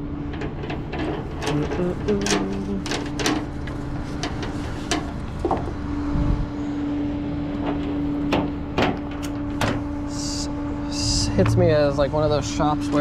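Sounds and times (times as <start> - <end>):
sharp clicks and metal knocks: 0.0 - 5.8, 7.6 - 9.9
truck engine idling: 0.0 - 13.0.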